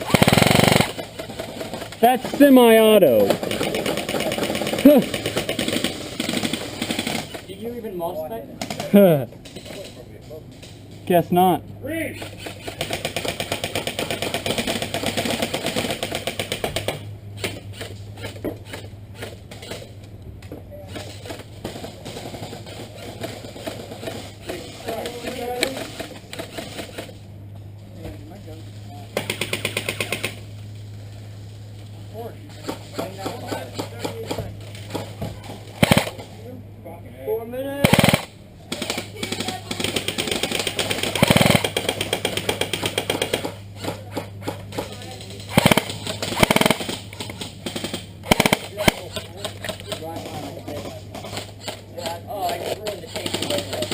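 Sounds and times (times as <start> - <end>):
airsoft gun firing full auto: 0.0 - 1.0, 12.2 - 18.0, 29.2 - 30.4, 35.8 - 36.2, 37.8 - 50.0.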